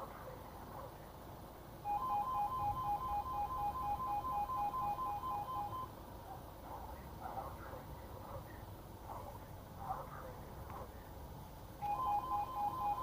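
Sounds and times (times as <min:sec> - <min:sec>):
level crossing two-tone warning alarm: 0:01.8 - 0:06.0, 0:11.8 - 0:13.0.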